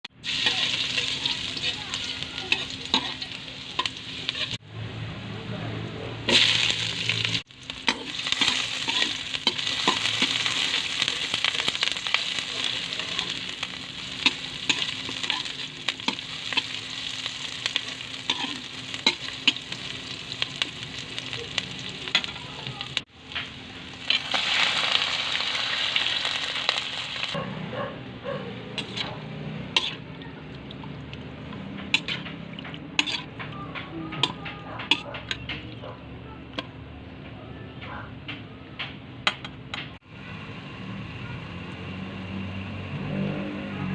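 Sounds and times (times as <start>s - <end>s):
squid sizzling in a pan: 0.2s - 4.6s, 6.3s - 27.4s.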